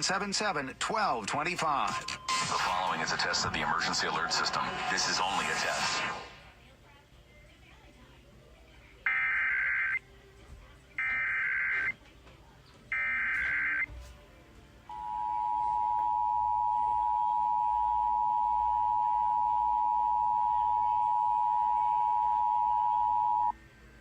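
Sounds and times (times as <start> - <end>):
shrill warbling data tone: 2.2 - 5.6
two-tone attention signal: 14.9 - 23.6.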